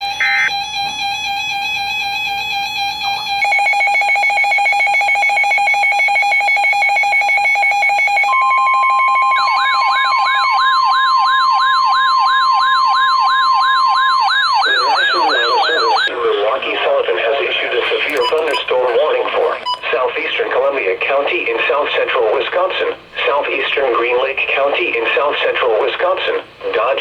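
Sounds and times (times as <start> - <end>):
steady alarm tone: 0.0 - 20.0
yelping siren sweep: 8.3 - 16.1
higher steady alert tone: 17.8 - 19.9
fast pulsing beep: 17.9 - 18.8, 19.5 - 19.9.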